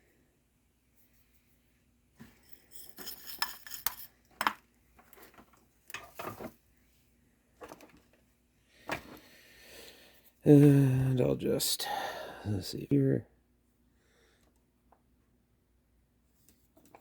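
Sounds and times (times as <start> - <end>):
small hard objects clinking: 2.4 - 4.6.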